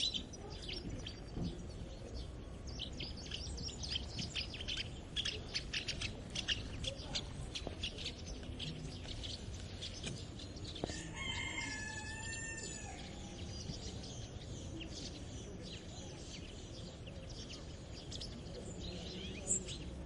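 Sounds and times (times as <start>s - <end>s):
low rural background: 0.0s - 20.0s
small birds chirping: 0.0s - 20.0s
rooster crowing: 10.9s - 13.2s.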